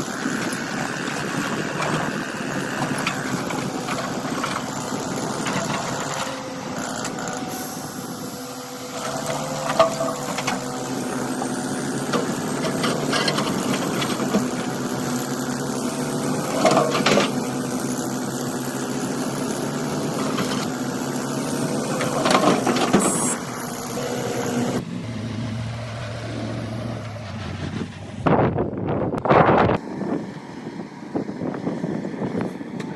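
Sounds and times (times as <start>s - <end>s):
excavator engine running: 0.0s - 32.9s
bucket scraping against rock: 0.3s - 7.2s, 9.0s - 15.4s, 16.0s - 17.5s, 19.5s - 24.8s.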